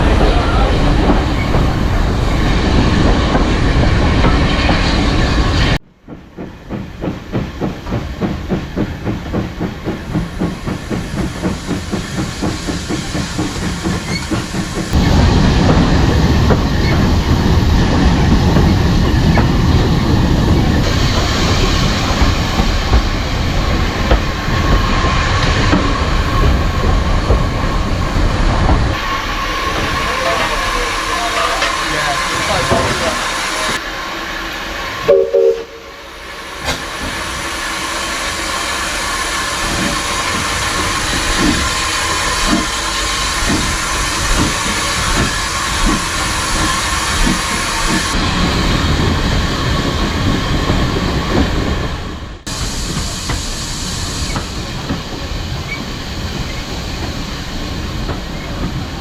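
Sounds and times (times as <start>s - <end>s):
steam locomotive exhaust chuffing: 0.0s - 59.0s
train rumbling and clattering on rails: 0.0s - 59.0s.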